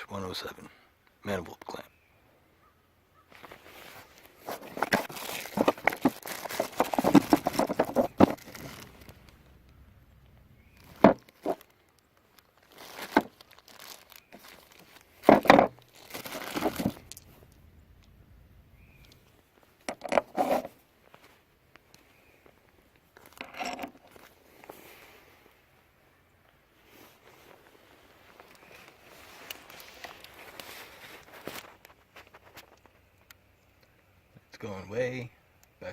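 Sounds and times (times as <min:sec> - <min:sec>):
packaging crinkling and tearing: 0:03.4 - 0:09.4, 0:10.7 - 0:17.3, 0:28.3 - 0:32.9
knocks and clatters: 0:04.5 - 0:09.2.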